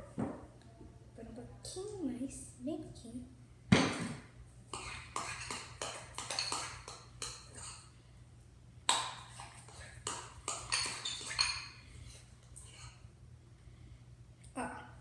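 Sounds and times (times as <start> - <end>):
utensil stirring slime in a bowl: 4.7 - 7.9, 8.9 - 13.1
utensil knocking against bowl: 4.8 - 7.7, 8.9 - 9.3, 10.0 - 11.7.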